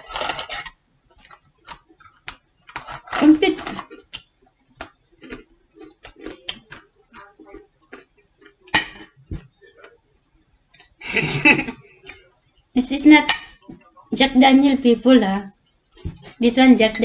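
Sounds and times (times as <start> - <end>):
person chewing crunchy snacks: 3.8 - 8.7.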